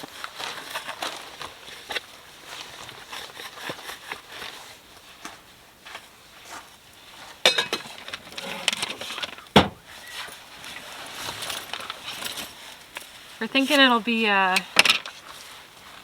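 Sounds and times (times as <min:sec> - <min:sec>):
dishes and cutlery clinking: 0:07.4 - 0:09.4.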